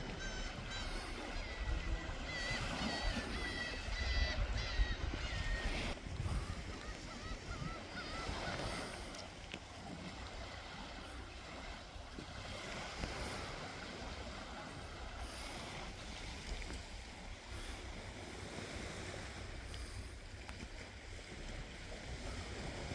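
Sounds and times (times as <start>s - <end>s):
wind rumbling on microphone: 0.0s - 10.2s
sea waves washing on shore: 0.0s - 22.9s.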